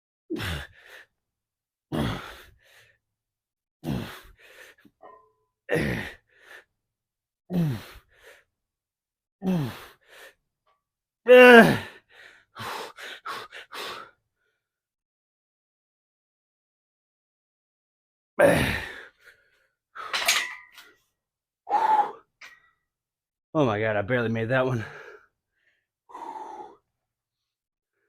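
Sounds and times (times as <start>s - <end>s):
man strained groan: 5.7s - 6.2s, 11.3s - 11.9s, 18.4s - 19.0s
quick panting breaths: 12.1s - 14.2s.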